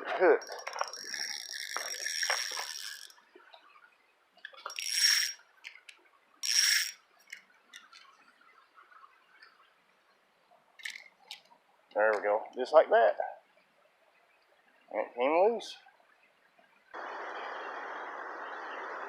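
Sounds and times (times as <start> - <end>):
fishing line zipping: 0.4 - 3.2, 4.6 - 5.4, 6.4 - 7.4
small clicks: 4.4 - 8.2, 10.8 - 12.6.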